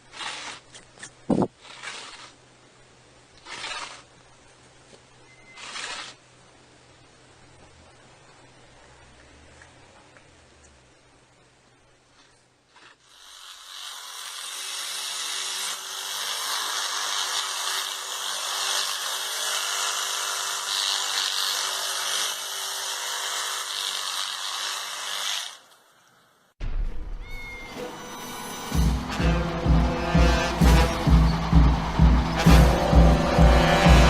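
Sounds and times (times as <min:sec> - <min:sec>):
small motorised tool whirring: 0:00.1 - 0:02.4, 0:03.4 - 0:04.1, 0:05.3 - 0:06.2, 0:12.7 - 0:25.9.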